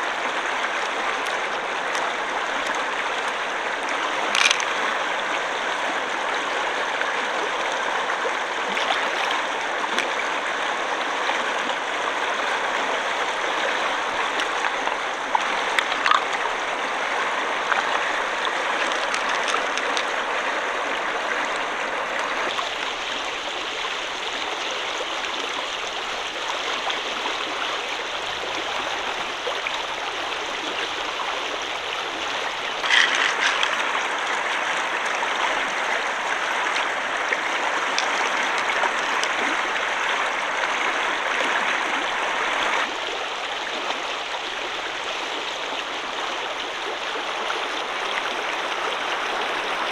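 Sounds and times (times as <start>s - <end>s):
shallow water flowing: 0.0s - 49.9s
short clicks or splashes: 4.3s - 4.8s, 14.4s - 16.5s, 18.8s - 20.2s, 32.8s - 33.9s.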